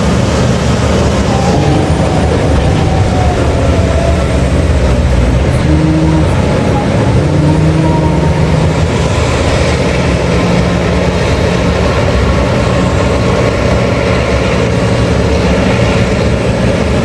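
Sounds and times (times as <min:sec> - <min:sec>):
heavy diesel machinery running: 0:00.0 - 0:17.0
machinery whine falling in pitch: 0:00.7 - 0:12.0.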